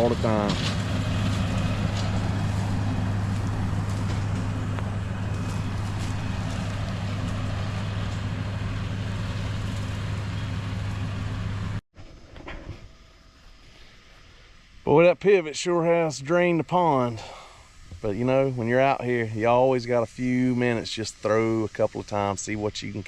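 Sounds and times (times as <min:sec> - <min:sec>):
vehicle engine running: 0:00.0 - 0:11.8.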